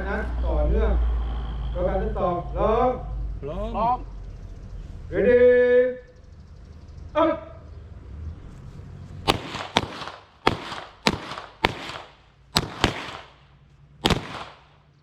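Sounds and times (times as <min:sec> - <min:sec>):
handgun shots with ringing echo: 0:09.3 - 0:14.9.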